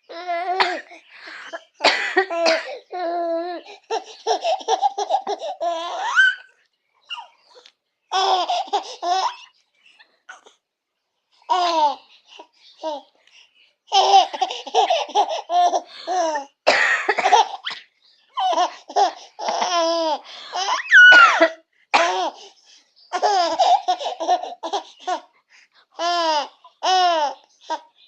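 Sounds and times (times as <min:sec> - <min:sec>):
baby laughing: 0:00.1 - 0:07.5, 0:08.1 - 0:09.6, 0:11.5 - 0:13.1, 0:13.9 - 0:17.8, 0:18.4 - 0:22.5, 0:23.1 - 0:25.3, 0:26.0 - 0:28.0
woman coughing: 0:01.8 - 0:02.8, 0:16.7 - 0:17.5, 0:21.0 - 0:22.2
baby squealing: 0:02.3 - 0:06.5, 0:07.1 - 0:07.4, 0:20.6 - 0:22.3.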